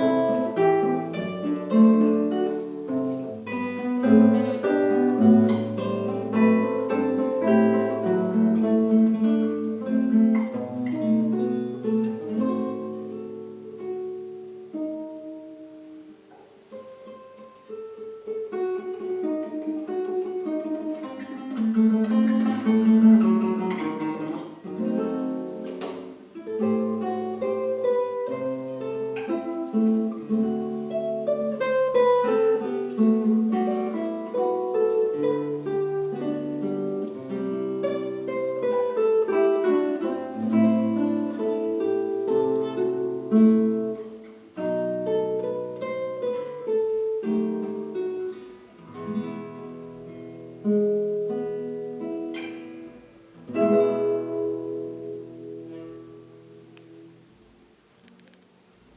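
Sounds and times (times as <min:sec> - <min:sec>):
acoustic guitar duet: 0:00.0 - 0:58.9.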